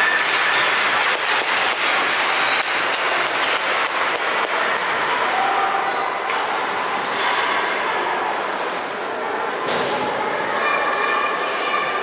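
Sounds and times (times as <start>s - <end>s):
sharp clacks of sticks and puck: 0.0s - 5.2s
crowd noise: 0.0s - 12.0s.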